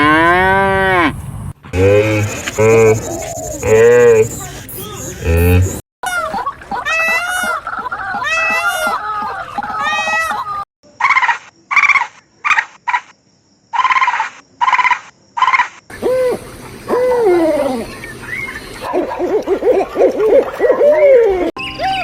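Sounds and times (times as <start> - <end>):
overlapping rising and falling animal calls: 1.8 - 13.0.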